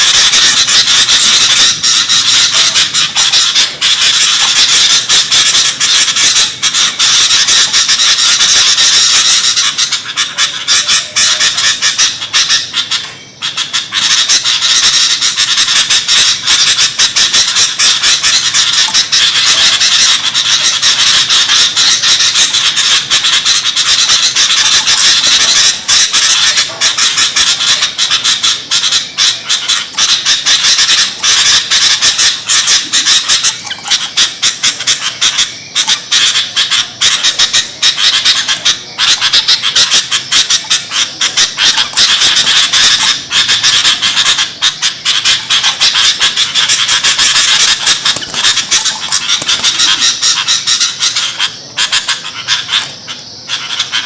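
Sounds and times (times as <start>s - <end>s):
bulbul harsh chattering calls: 0.0s - 54.0s.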